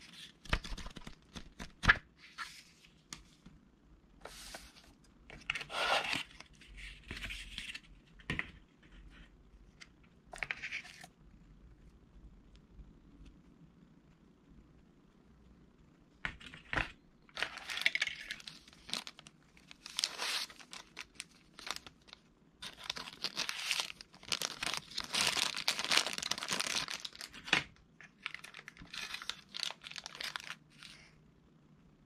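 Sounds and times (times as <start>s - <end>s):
packaging crinkling and tearing: 17.4s - 31.1s.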